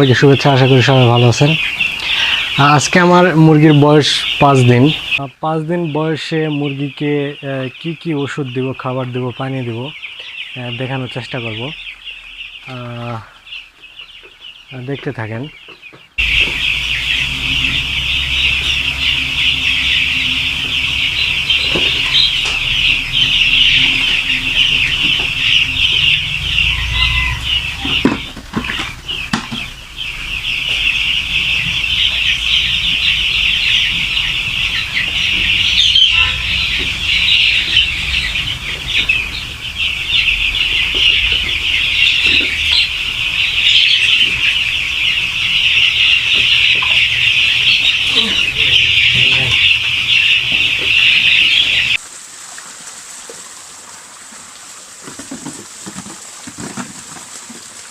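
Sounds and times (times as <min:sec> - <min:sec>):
chicks peeping: 0:00.0 - 0:52.0, 0:55.1 - 0:57.2
low hum: 0:16.2 - 0:51.9.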